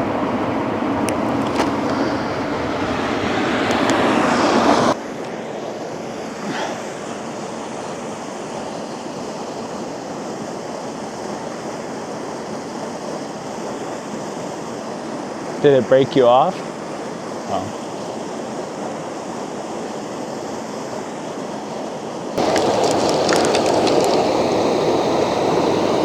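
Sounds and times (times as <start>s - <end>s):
river water rushing: 0.0s - 5.0s, 22.4s - 26.0s.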